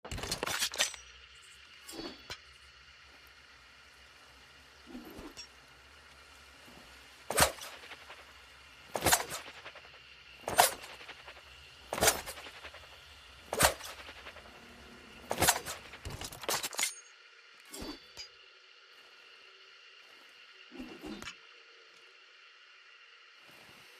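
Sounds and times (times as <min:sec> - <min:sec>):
knives striking target: 0:07.3 - 0:07.8, 0:08.9 - 0:09.6, 0:10.5 - 0:11.0, 0:11.9 - 0:12.6, 0:13.5 - 0:14.1, 0:15.3 - 0:17.0.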